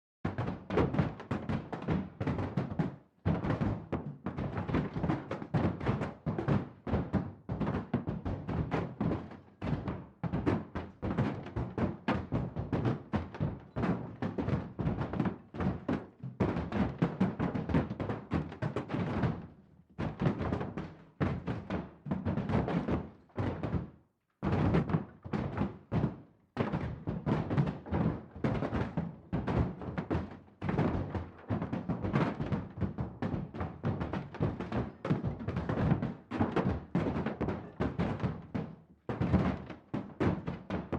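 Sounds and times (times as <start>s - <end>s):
fists pounding on a wall: 0.3s - 23.9s.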